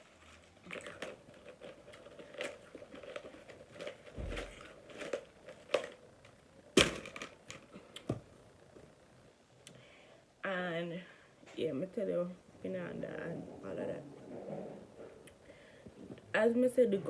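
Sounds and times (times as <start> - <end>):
bag rustling and crinkling: 0.0 - 7.8.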